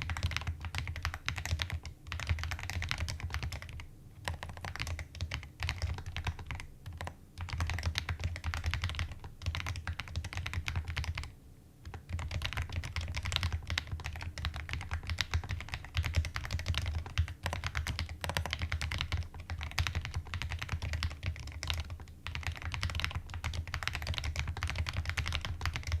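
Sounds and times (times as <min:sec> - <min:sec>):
mechanical keyboard typing: 0:00.0 - 0:26.0.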